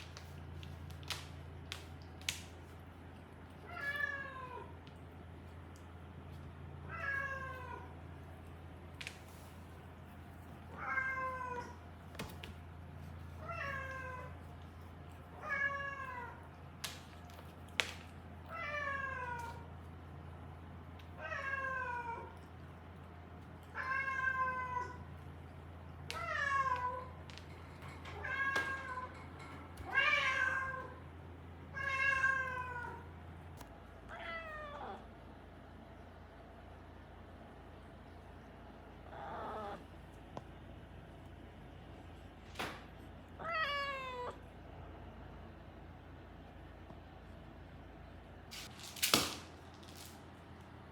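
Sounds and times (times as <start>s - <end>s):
steady low hum: 0.0s - 50.9s
cat meowing: 43.4s - 44.4s.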